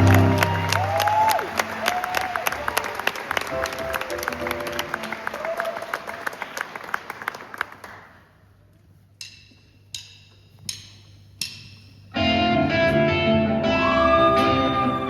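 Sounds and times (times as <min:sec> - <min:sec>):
audience applause: 0:00.0 - 0:08.2
percussive count-in clicks: 0:09.2 - 0:12.1
band playing led by guitar: 0:12.2 - 0:15.0.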